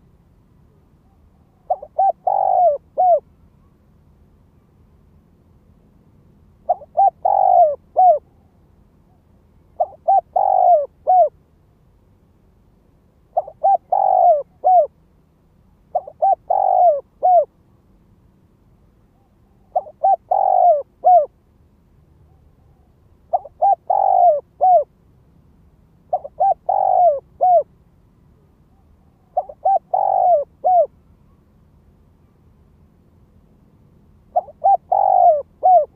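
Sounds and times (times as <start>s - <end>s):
dove cooing: 1.0s - 3.3s, 6.6s - 8.5s, 9.8s - 11.4s, 13.3s - 15.0s, 15.9s - 17.5s, 19.1s - 21.3s, 22.3s - 25.0s, 26.1s - 27.7s, 28.7s - 31.0s, 34.3s - 35.9s.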